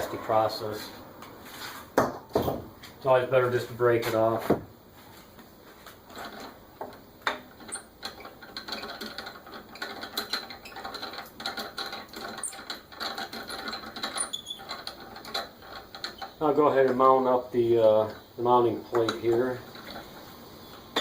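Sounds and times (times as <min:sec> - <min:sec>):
scraping on metal: 0:05.7 - 0:06.6, 0:07.3 - 0:18.3.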